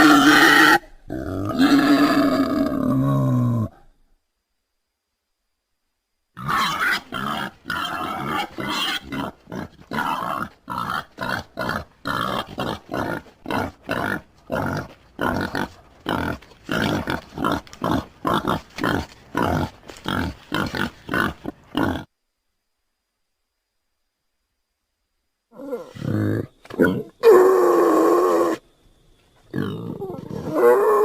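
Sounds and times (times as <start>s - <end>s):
wild boar grunting: 6.4s - 22.1s.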